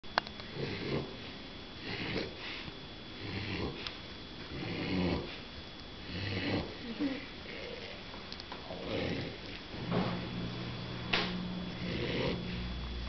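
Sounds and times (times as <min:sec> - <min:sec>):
puppy snoring: 0:00.5 - 0:01.2, 0:01.8 - 0:05.4, 0:06.0 - 0:08.0, 0:08.6 - 0:10.0, 0:11.6 - 0:12.7.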